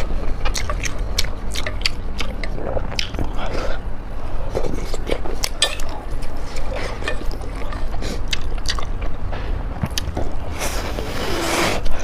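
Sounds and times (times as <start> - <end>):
chewing with wet mouth clicks: 0.0 - 3.8, 4.6 - 9.2
steady low rumble: 0.0 - 12.0.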